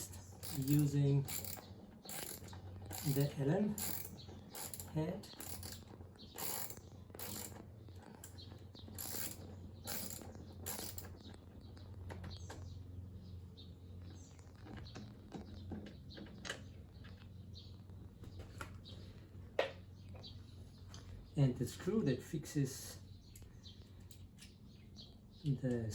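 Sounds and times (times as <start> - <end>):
ratchet wrench clicking: 0.0 - 7.6, 9.0 - 11.1.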